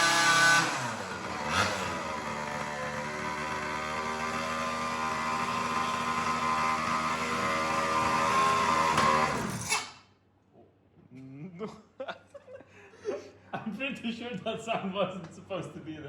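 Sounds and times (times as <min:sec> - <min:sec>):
small motorbike engine revving: 0:00.0 - 0:10.0.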